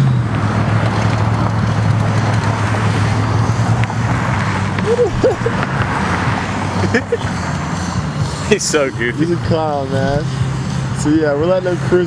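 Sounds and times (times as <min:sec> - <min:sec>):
road noise: 0:00.0 - 0:12.0
vehicle engine running: 0:00.0 - 0:12.0.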